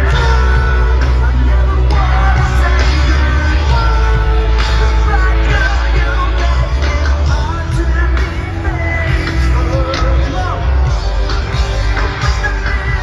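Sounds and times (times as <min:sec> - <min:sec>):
rock music with singer: 0:00.0 - 0:13.0.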